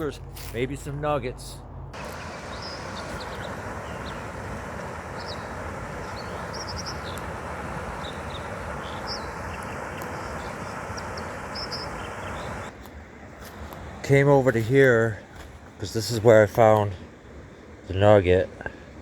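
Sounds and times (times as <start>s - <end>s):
small birds chirping: 2.0s - 12.7s
river water rushing: 2.0s - 12.8s.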